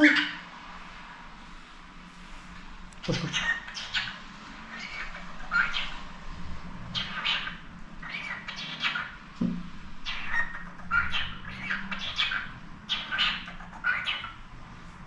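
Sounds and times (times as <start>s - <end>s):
parakeet chattering: 3.0s - 6.1s, 7.0s - 9.2s, 10.0s - 14.5s.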